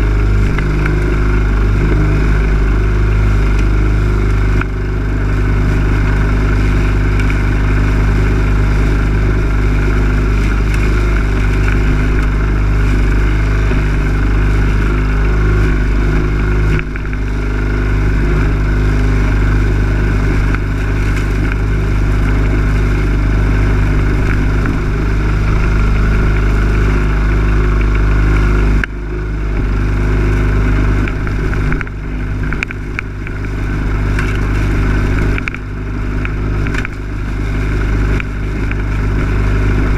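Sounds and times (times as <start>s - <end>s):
lawn mower engine running: 0.0s - 39.9s.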